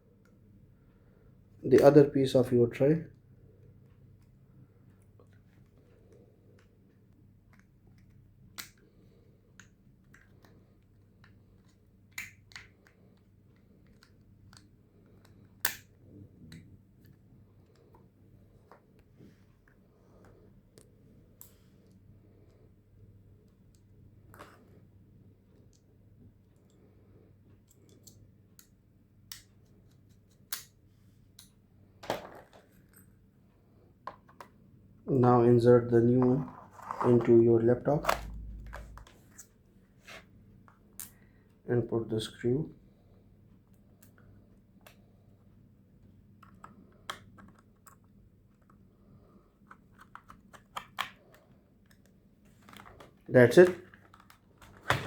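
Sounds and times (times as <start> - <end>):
steady low hum: 35.0 - 39.5
clicks and taps handling laptop: 49.6 - 53.2.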